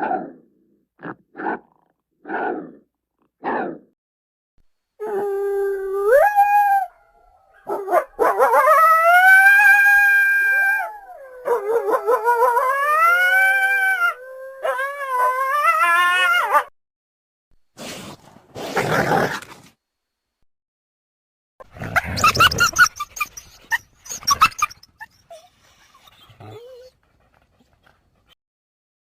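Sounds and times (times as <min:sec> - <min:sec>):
coyote howls: 0:05.0 - 0:16.7.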